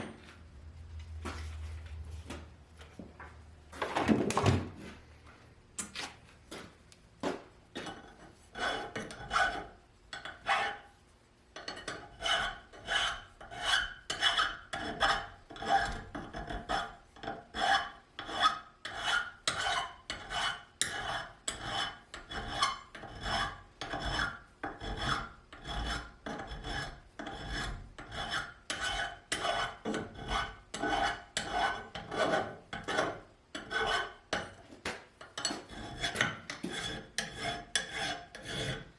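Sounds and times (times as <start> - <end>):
hand rasp strokes on metal: 8.3 - 10.9, 11.8 - 34.5, 35.4 - 38.9.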